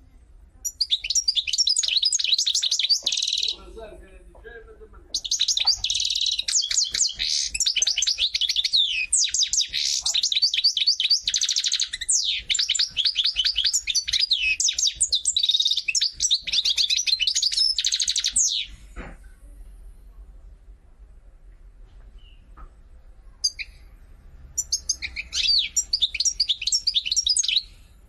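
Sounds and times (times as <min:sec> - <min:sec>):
bird singing: 0:00.6 - 0:03.8, 0:05.1 - 0:18.8, 0:23.4 - 0:27.8.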